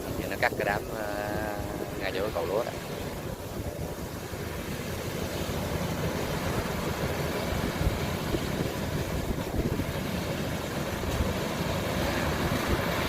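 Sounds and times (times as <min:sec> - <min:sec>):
combine harvester running: 0:00.0 - 0:13.0.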